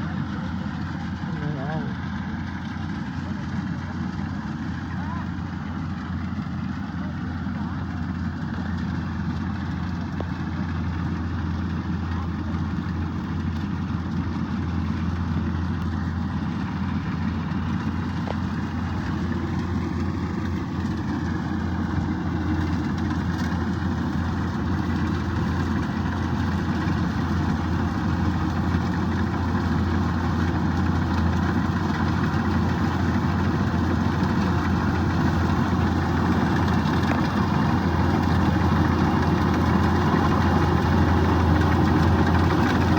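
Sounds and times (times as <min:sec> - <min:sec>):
combine harvester engine droning: 0:00.0 - 0:42.9.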